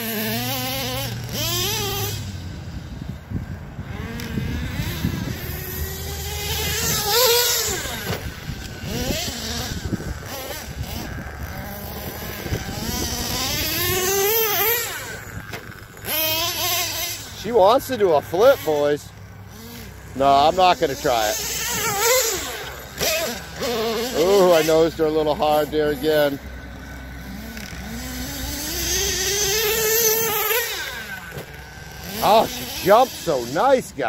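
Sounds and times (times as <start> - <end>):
small nitro engine revving: 0.0 - 34.0.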